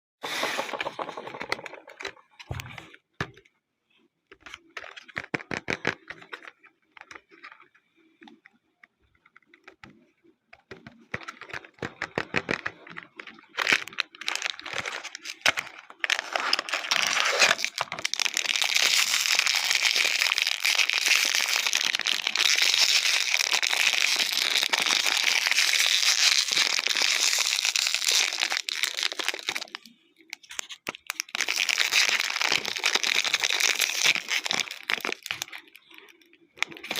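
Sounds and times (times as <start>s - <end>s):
toy packaging tearing: 0.2s - 2.2s, 11.2s - 36.9s
wrapper crinkling: 11.2s - 36.9s.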